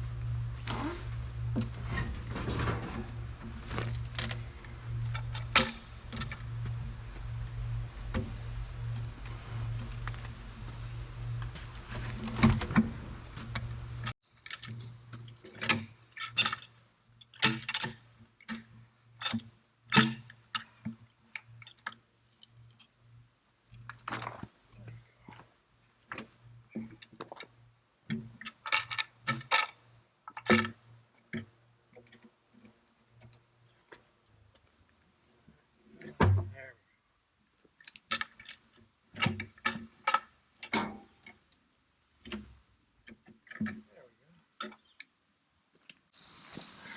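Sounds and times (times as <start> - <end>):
faint low hum: 0.0 - 14.1.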